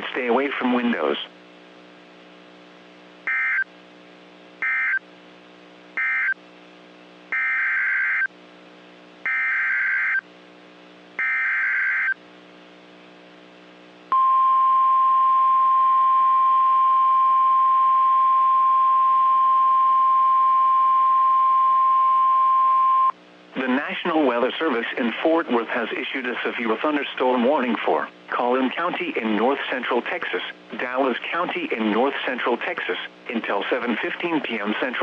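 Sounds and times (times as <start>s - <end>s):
faint low hum: 0.0s - 35.0s
steady warning alarm tone: 3.3s - 3.7s, 4.6s - 5.0s, 6.0s - 6.4s, 7.4s - 8.3s, 9.3s - 10.2s, 11.2s - 12.2s.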